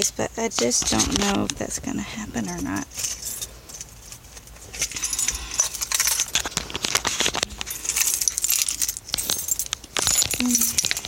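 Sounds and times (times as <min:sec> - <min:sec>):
keys jangling: 0:02.9 - 0:11.0.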